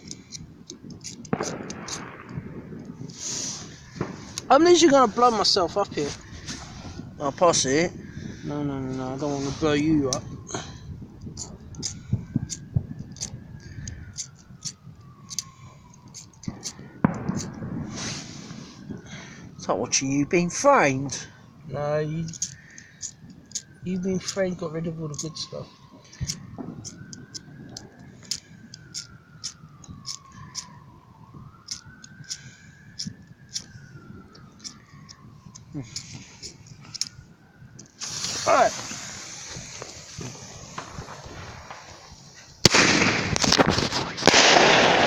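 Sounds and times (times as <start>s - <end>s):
siren wailing: 0.0s - 45.0s
firework cracks and pops: 0.9s - 7.0s, 16.4s - 18.8s, 38.0s - 45.0s.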